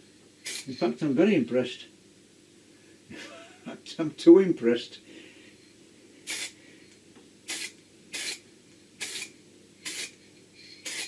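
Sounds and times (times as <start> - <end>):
spray paint hissing on metal: 0.4 - 0.8, 6.2 - 6.6, 7.5 - 8.4, 9.0 - 11.0.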